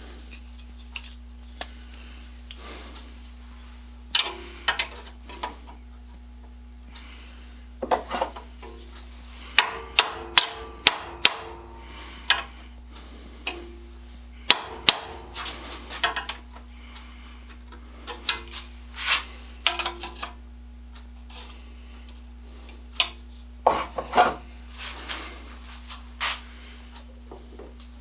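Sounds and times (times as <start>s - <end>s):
low workshop hum: 0.0s - 28.0s
hammer tapping on metal: 9.6s - 11.7s, 14.5s - 15.2s.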